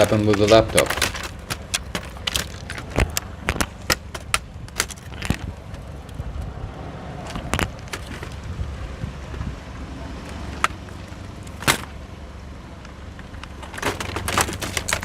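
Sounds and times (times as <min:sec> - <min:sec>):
plastic cracking under tyre: 0:00.0 - 0:06.5, 0:07.2 - 0:08.4, 0:10.2 - 0:12.0, 0:13.4 - 0:15.0
car engine rumble: 0:00.0 - 0:15.0.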